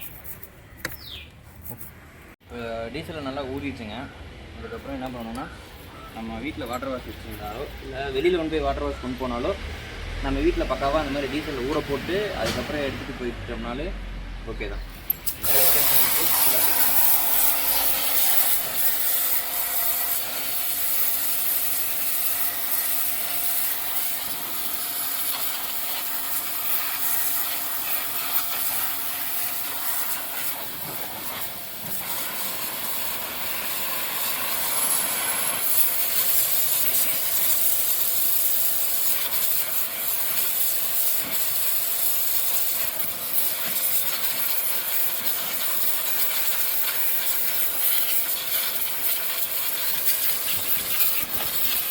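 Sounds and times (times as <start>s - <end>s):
chain rasping over sprockets: 14.9s - 51.9s.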